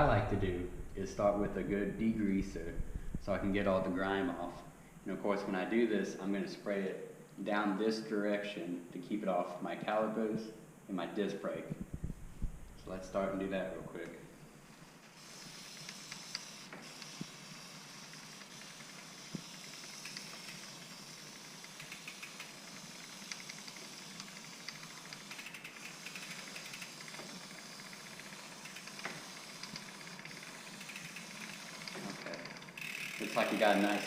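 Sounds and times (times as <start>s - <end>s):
spray can hissing: 15.0s - 32.0s.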